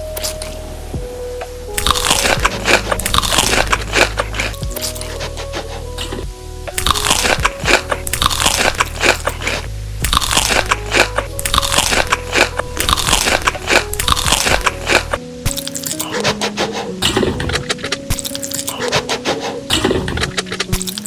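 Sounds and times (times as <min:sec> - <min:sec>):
background music: 0:00.0 - 0:21.0
crunching of crunchy food: 0:01.8 - 0:06.2, 0:06.8 - 0:16.4.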